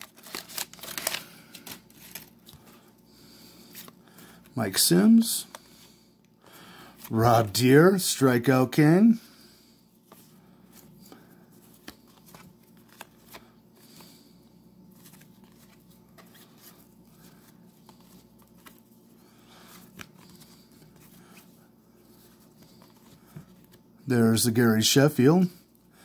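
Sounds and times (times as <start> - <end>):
cards rustling and clicking: 0.0 - 3.0, 3.6 - 4.5, 10.1 - 23.8
steady low hum: 0.0 - 26.0.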